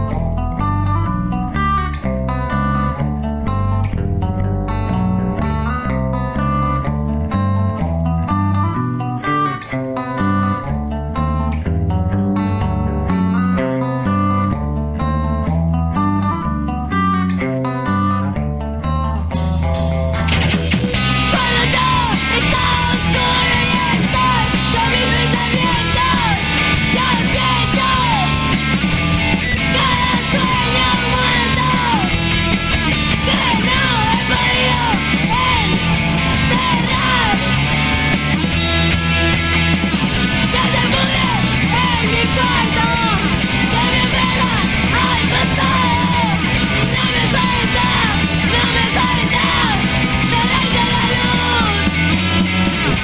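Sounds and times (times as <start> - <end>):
rock song from full band: 19.3 - 53.0.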